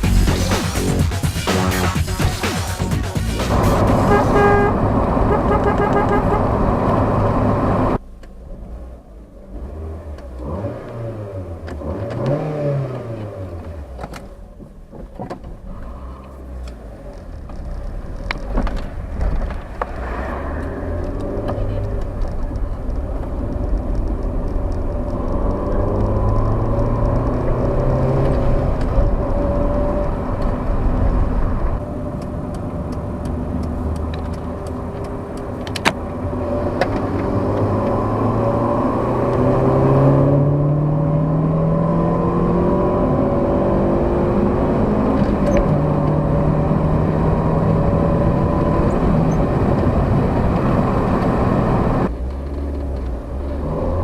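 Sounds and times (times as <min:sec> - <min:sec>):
intro music: 0:00.0 - 0:06.7
car engine revving: 0:00.0 - 0:14.3, 0:15.7 - 0:54.0.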